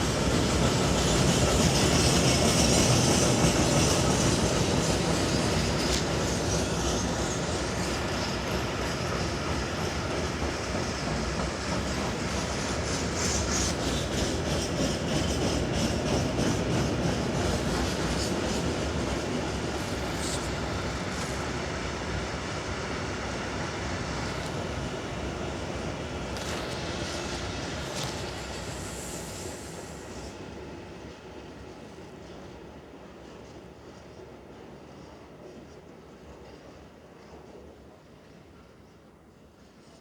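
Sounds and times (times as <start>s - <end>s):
freight train rumbling past: 0.0s - 40.0s.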